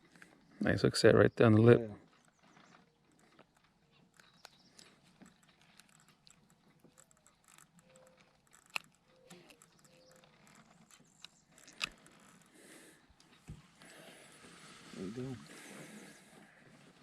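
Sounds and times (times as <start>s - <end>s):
faint scattered clicks: 1.6s - 14.1s.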